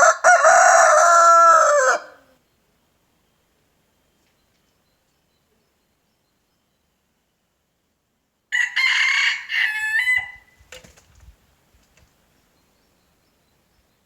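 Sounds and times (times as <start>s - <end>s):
rooster crowing: 0.0s - 2.3s, 8.5s - 10.6s.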